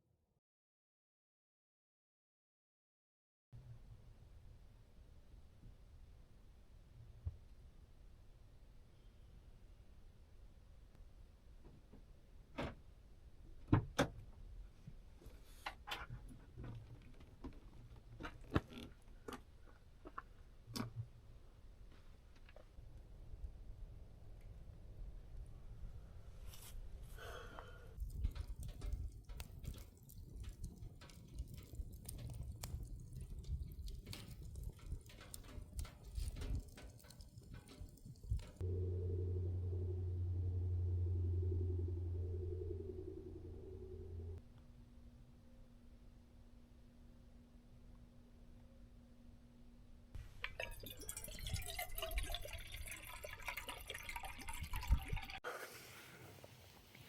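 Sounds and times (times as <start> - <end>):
hot water pouring and dripping: 27.6 - 38.6, 50.4 - 57.0
low rumble: 38.3 - 44.4.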